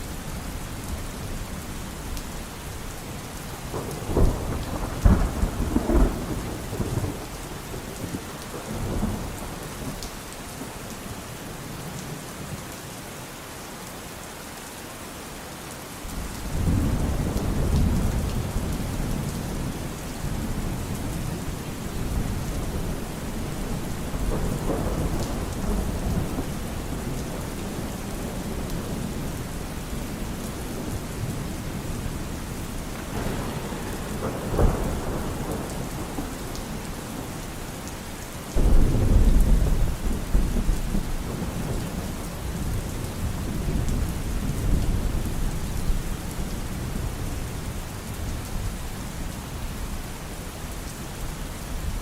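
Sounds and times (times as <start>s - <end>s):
steady rain: 0.0s - 52.0s
thunder cracks and rumble: 3.5s - 10.1s, 16.1s - 48.4s.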